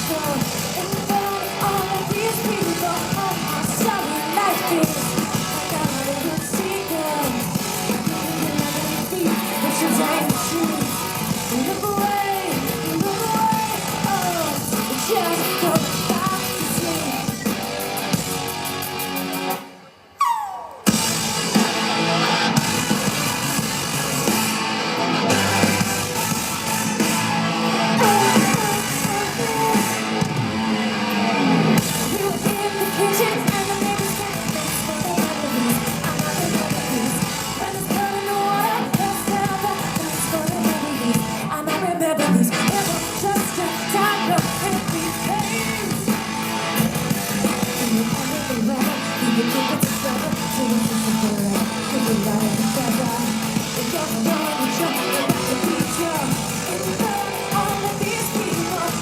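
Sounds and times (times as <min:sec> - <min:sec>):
woman singing: 0:00.0 - 0:17.5, 0:27.9 - 0:30.2, 0:31.8 - 0:46.4, 0:47.3 - 0:59.0
distorted guitar: 0:00.0 - 0:59.0
heavy beats: 0:20.2 - 0:41.4, 0:42.6 - 0:59.0.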